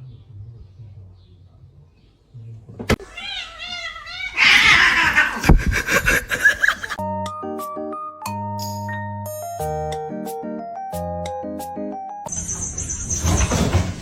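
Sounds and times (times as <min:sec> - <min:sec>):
cat meowing: 0:03.0 - 0:05.5
music with plinking mallet notes: 0:07.0 - 0:12.5.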